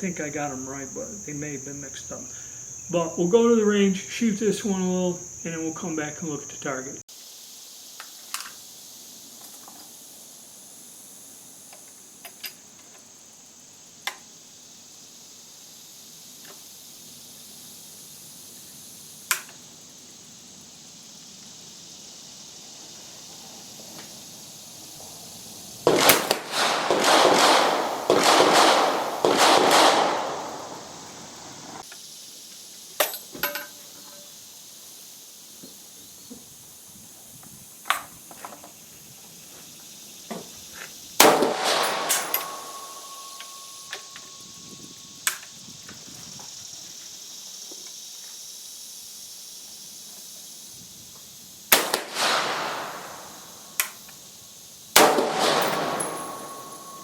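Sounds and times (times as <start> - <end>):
rifle shots: 25.9 - 31.8, 41.2 - 43.8, 51.7 - 53.8, 55.0 - 57.0.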